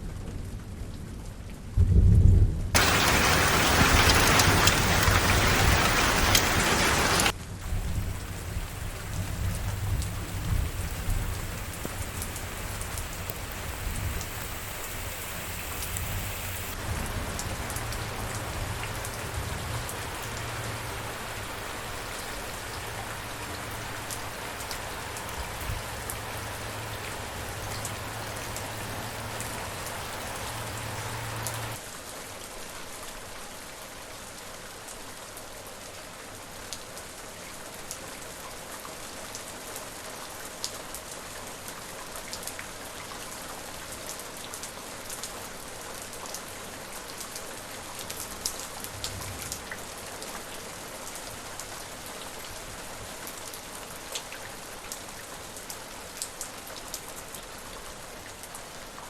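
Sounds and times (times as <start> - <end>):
steady rain: 0.0 - 59.0
low rumble: 1.7 - 31.8
raindrops ticking on a surface: 2.8 - 31.9, 36.7 - 59.0.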